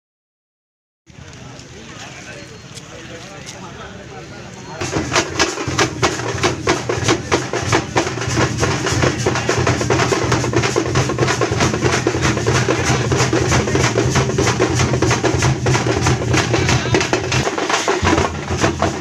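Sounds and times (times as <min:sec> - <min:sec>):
drums played fast: 0:04.7 - 0:19.0.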